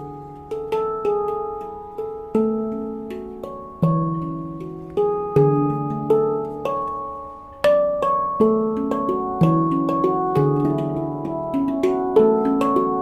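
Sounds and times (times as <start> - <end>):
deep bass handpan note: 0.0 - 13.0
handpan slow melody: 0.0 - 13.0.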